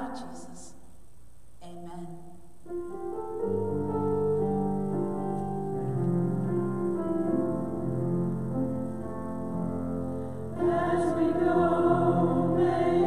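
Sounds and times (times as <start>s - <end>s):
keyboard playing slow chords: 2.7s - 13.0s.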